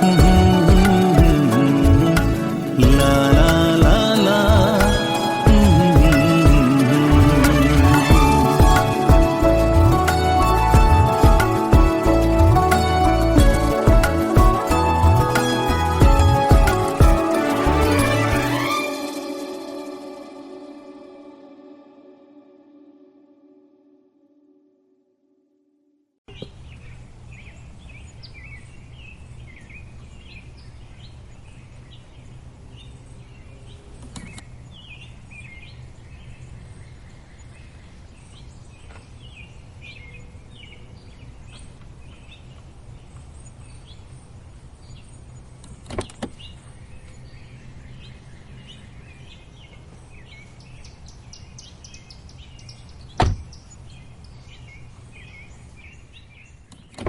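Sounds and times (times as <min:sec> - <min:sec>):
birds chirping: 0:26.3 - 0:57.0.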